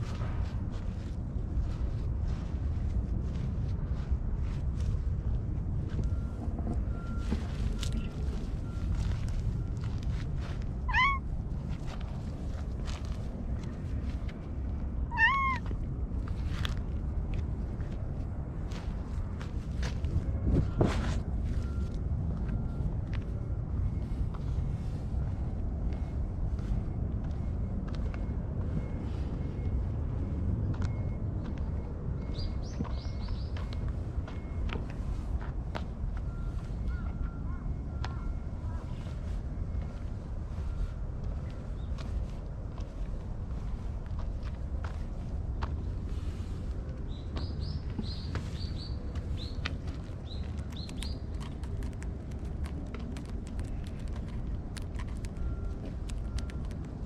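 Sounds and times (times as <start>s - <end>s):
steady low rumble: 0.0s - 57.0s
bird chirping: 47.1s - 51.6s.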